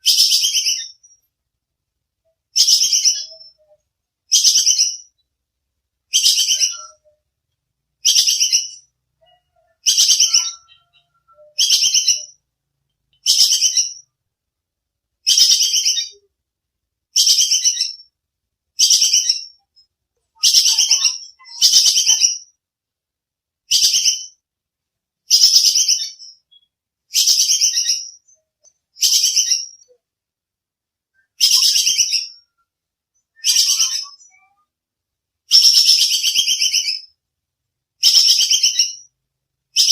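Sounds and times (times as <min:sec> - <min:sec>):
squirrel chattering call: 0:08.0 - 0:12.4.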